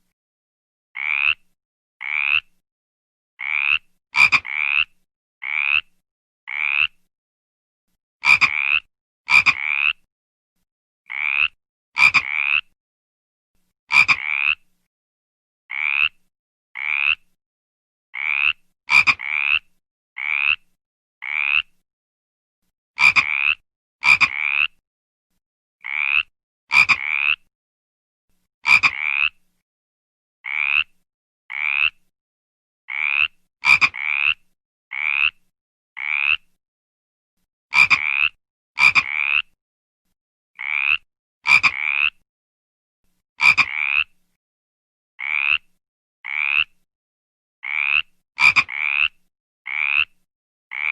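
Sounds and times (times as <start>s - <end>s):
frog croaking: 1.0s - 2.5s, 3.4s - 5.9s, 6.5s - 7.0s, 8.2s - 10.0s, 11.1s - 12.8s, 13.9s - 14.6s, 15.7s - 16.2s, 16.8s - 17.2s, 18.2s - 20.6s, 21.2s - 21.7s, 23.0s - 24.8s, 25.8s - 27.4s, 28.7s - 29.4s, 30.4s - 30.9s, 31.5s - 32.0s, 32.9s - 35.4s, 36.0s - 36.5s, 37.7s - 39.5s, 40.6s - 42.2s, 43.4s - 44.1s, 45.2s - 45.7s, 46.3s - 46.8s, 47.6s - 50.1s.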